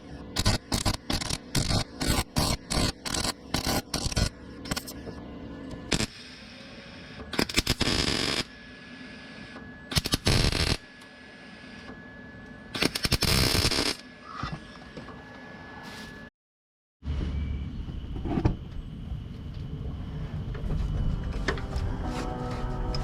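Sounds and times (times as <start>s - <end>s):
mig welding crackling: 0.4s - 4.9s.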